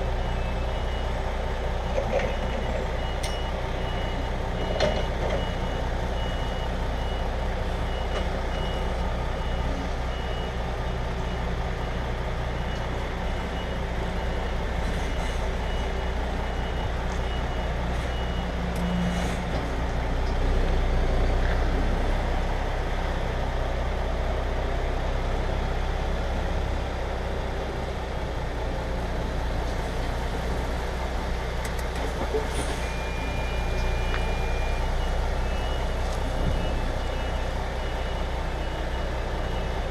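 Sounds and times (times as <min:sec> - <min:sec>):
diesel engine idling: 0:00.0 - 0:39.9
reversing alarm beeping: 0:32.6 - 0:39.8.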